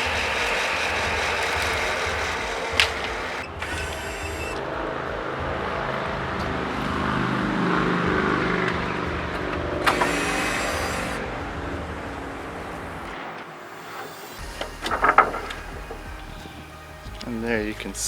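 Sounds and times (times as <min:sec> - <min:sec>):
chainsaw cutting wood: 0:00.0 - 0:13.1.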